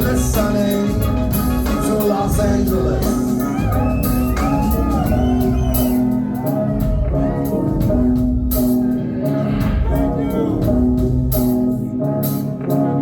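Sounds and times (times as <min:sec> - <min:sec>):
bass notes: 0:00.0 - 0:13.0
drums: 0:00.0 - 0:13.0.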